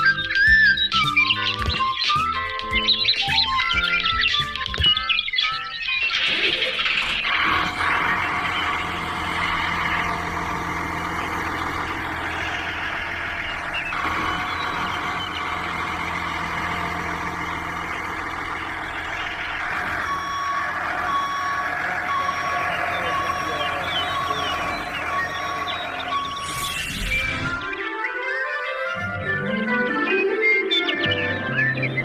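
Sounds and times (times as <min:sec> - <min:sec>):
vehicle engine running: 0:00.0 - 0:05.1, 0:07.2 - 0:26.8
reversing alarm beeping: 0:00.0 - 0:06.2, 0:07.2 - 0:27.9.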